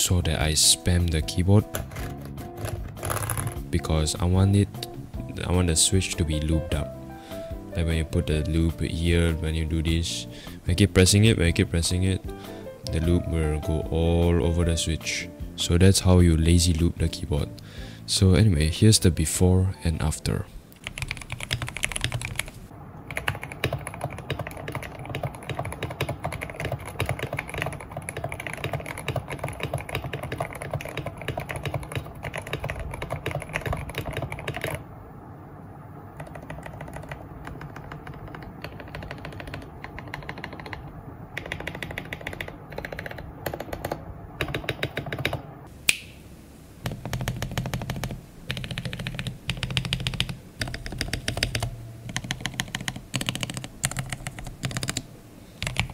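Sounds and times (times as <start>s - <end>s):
mechanical keyboard typing: 1.7s - 3.7s, 20.8s - 34.8s, 36.2s - 45.4s, 46.8s - 55.9s.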